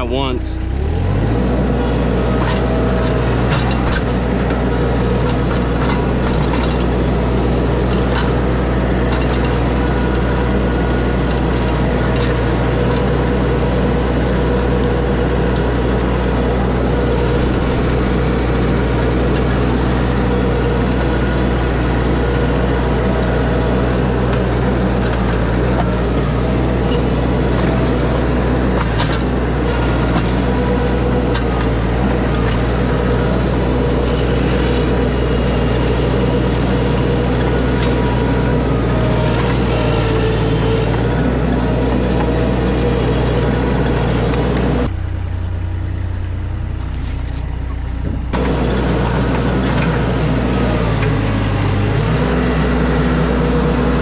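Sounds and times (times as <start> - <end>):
excavator diesel engine running: 0.0 - 54.0.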